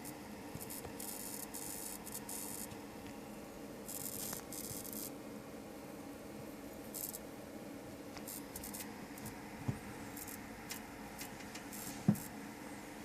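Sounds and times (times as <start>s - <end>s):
crackling hiss bursts: 0.0s - 3.2s, 3.8s - 5.2s, 6.9s - 7.3s, 8.1s - 9.5s, 10.1s - 12.4s
power supply low hum: 0.0s - 13.0s.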